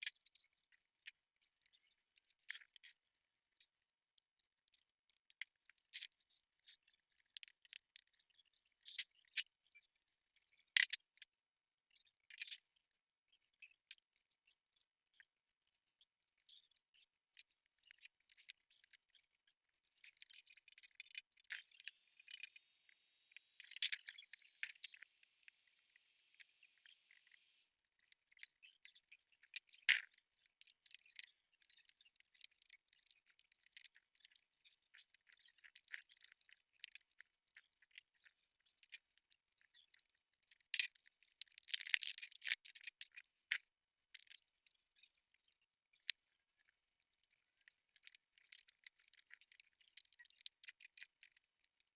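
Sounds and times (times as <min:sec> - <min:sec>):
small tools clicking and scraping: 0:21.5 - 0:27.6.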